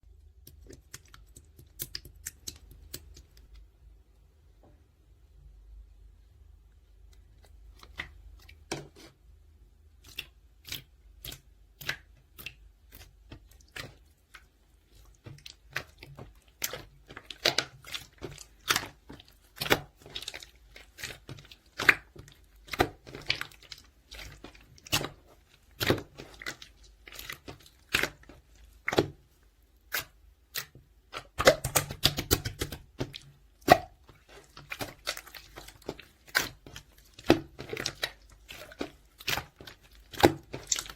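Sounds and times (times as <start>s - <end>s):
slime clicking and popping: 0.4s - 3.5s, 29.9s - 40.9s.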